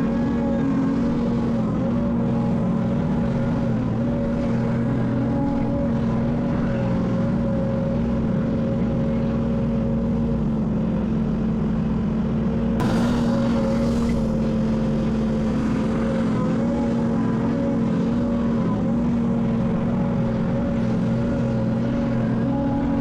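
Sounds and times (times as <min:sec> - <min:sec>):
diesel earthmoving machinery running: 0:00.0 - 0:23.0
brief rush of noise: 0:12.8 - 0:15.3.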